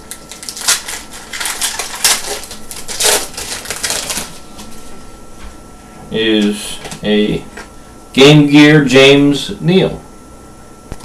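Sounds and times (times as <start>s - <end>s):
wrapper tearing and crinkling: 0.0s - 4.8s.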